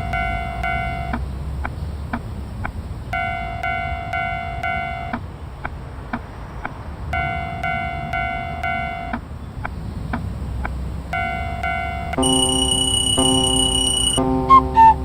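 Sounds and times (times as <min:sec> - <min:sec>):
level-crossing warning bell: 0:00.0 - 0:01.2, 0:03.1 - 0:05.2, 0:07.1 - 0:09.2, 0:11.1 - 0:15.0
sharp ticks: 0:00.0 - 0:14.4.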